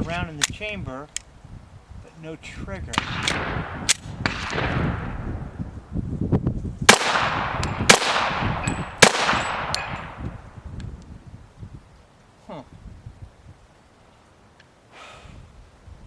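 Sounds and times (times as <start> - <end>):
gunshots echoing: 3.0 - 5.2, 6.9 - 10.3.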